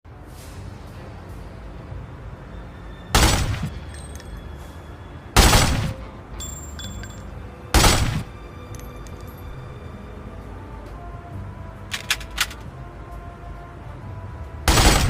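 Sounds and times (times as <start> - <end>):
automatic rifle fire bursts: 3.2 - 3.7, 5.4 - 6.0, 7.8 - 8.3, 14.7 - 15.0.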